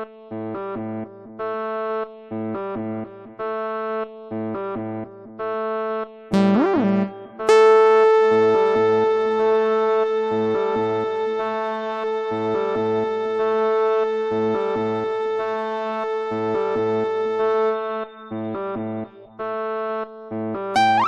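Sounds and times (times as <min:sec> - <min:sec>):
held note over bass figure: 0:06.4 - 0:09.0, 0:20.8 - 0:21.0.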